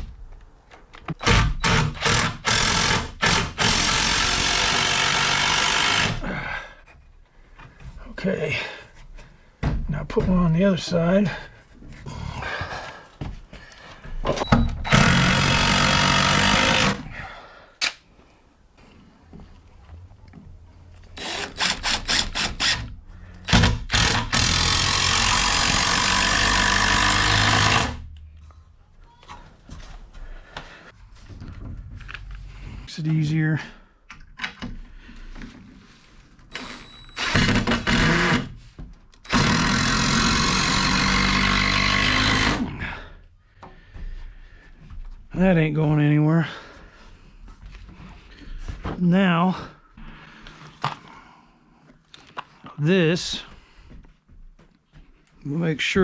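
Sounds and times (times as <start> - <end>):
power tool running: 1.2 - 6.2, 14.9 - 17.1, 21.2 - 28.1, 36.5 - 38.5, 39.2 - 42.7.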